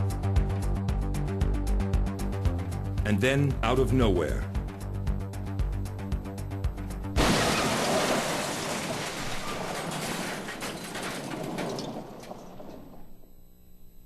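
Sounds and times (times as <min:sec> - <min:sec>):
truck crash: 0:07.1 - 0:13.3
clattering metal and debris: 0:07.2 - 0:13.2.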